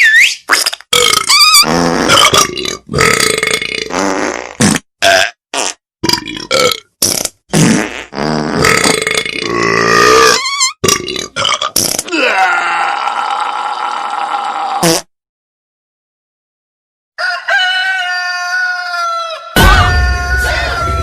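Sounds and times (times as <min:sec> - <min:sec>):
voice making burp-like noises: 0:00.9 - 0:15.1.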